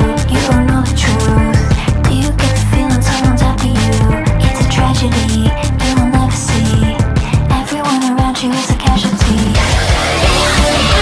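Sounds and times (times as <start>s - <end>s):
instrumental r and b music: 0.0s - 11.0s.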